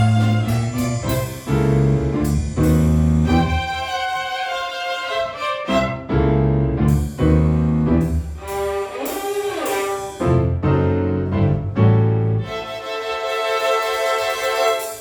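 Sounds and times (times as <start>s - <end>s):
violin ensemble playing: 0.0s - 2.3s, 3.2s - 6.6s, 7.8s - 10.5s, 12.4s - 15.0s
piano chords: 0.0s - 15.0s.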